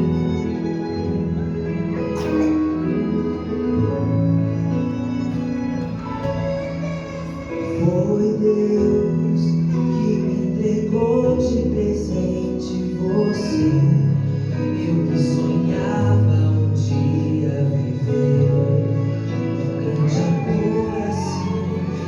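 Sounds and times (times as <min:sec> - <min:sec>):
sustained instrumental accompaniment: 0:00.0 - 0:11.2
person singing: 0:01.9 - 0:22.0.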